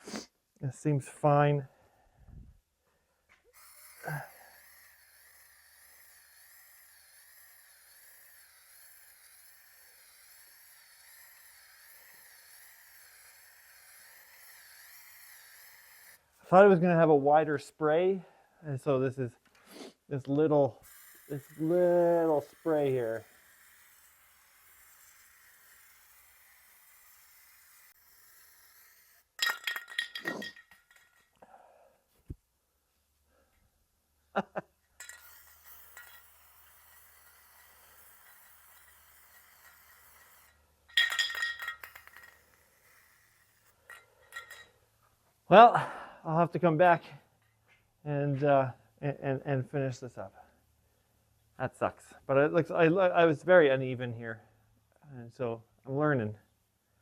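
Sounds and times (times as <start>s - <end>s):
spray paint can hissing: 3.5s - 16.3s, 20.8s - 31.0s, 35.0s - 44.6s
mixing ball rattling in can: 27.9s - 31.4s, 35.0s - 44.7s.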